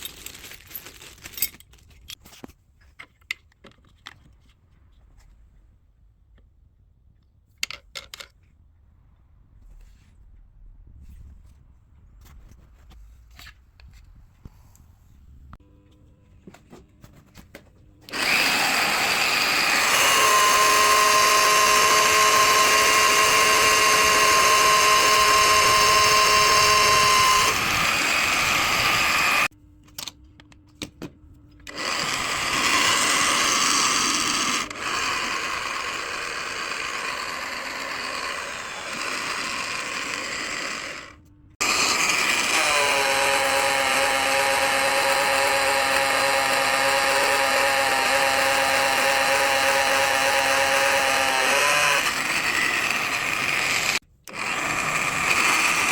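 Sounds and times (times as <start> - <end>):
power tool motor whining: 18.1 - 29.5, 31.6 - 55.9.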